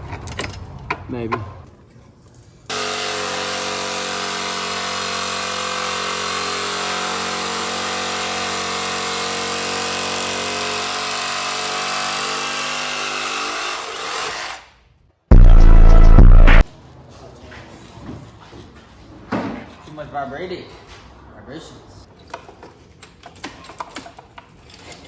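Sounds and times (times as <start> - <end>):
power grinder cutting chain: 2.7 - 14.6.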